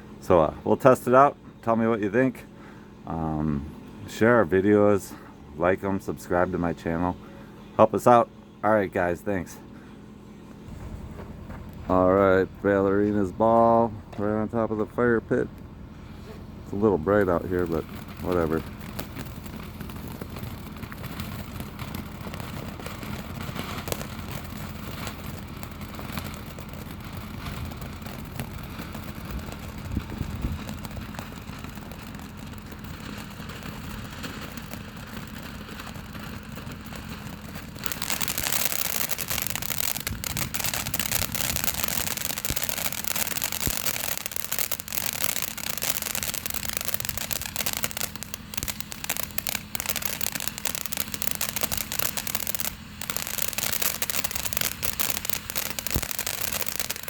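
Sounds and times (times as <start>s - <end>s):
firework hissing sparks: 16.1s - 57.0s.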